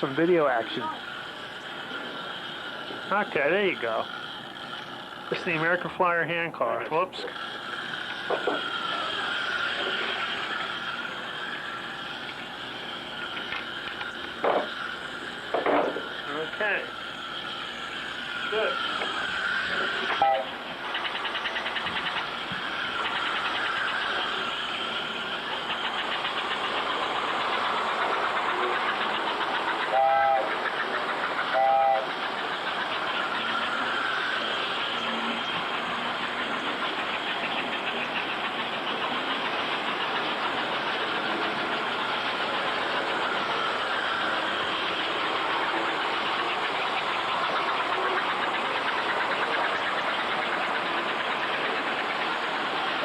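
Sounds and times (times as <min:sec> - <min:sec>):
toy train rattling hum: 0:00.0 - 0:53.0
toy train whistle toots: 0:07.4 - 0:30.8, 0:31.4 - 0:37.2.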